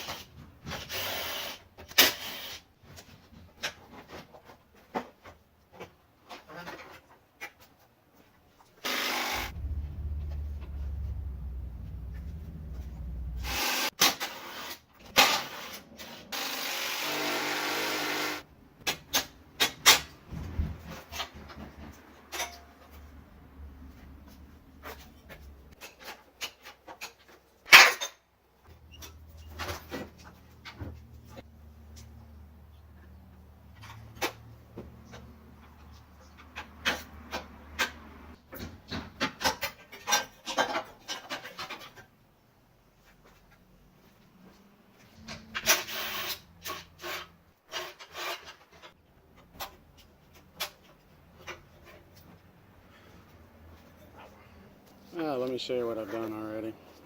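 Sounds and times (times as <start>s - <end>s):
low steady hum: 9.4s - 13.8s
brief rushing noise: 9.5s - 13.9s.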